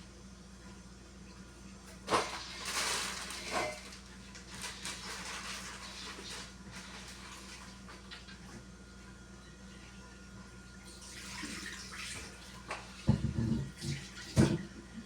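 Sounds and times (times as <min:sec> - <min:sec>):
clatter of household items: 0:01.9 - 0:08.6, 0:11.5 - 0:14.8.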